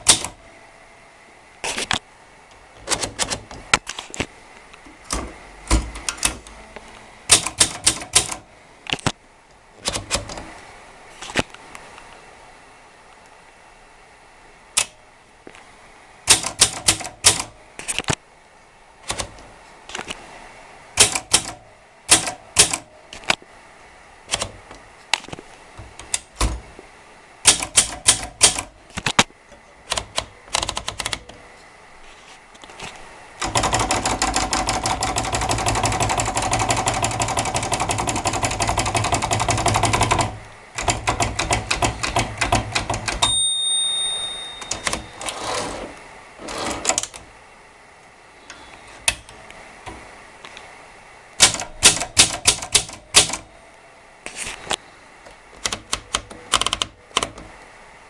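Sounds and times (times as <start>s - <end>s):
manual typewriter typing: 0.0s - 0.4s, 2.8s - 3.6s, 5.1s - 6.5s, 7.3s - 8.5s, 9.8s - 10.5s, 16.3s - 17.5s, 19.0s - 19.4s, 21.0s - 22.9s, 27.4s - 28.7s, 29.9s - 31.4s, 33.4s - 43.4s, 44.6s - 45.7s, 51.4s - 53.5s, 55.6s - 57.4s
typewriter bell ringing: 43.2s - 45.4s.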